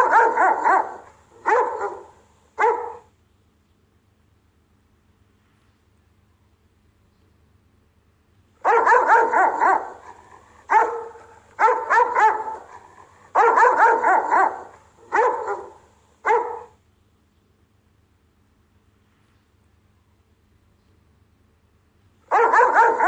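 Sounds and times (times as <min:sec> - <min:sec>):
dog barking: 0:00.0 - 0:03.1, 0:08.6 - 0:16.8, 0:22.3 - 0:23.0.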